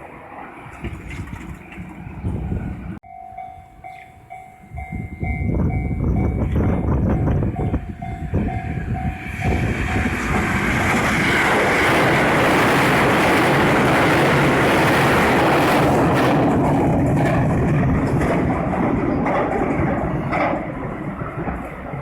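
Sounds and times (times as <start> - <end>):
train wheels rumbling on rails: 0.0 - 22.0
level crossing warning bell: 3.0 - 10.1.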